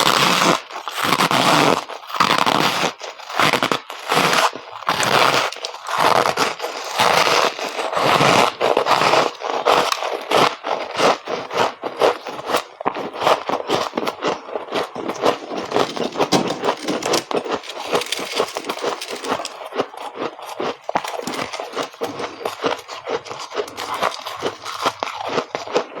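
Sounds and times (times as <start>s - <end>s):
frost being chewed: 0.0s - 26.0s.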